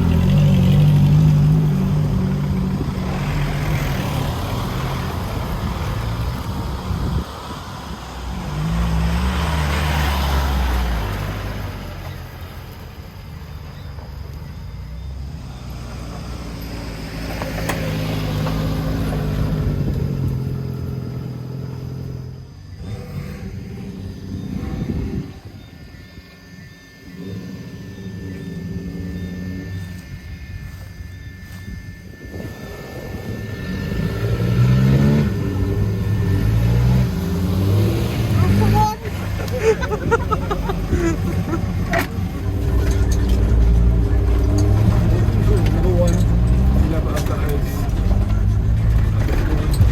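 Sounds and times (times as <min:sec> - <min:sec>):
off-road vehicle engine running: 0:00.0 - 0:49.9.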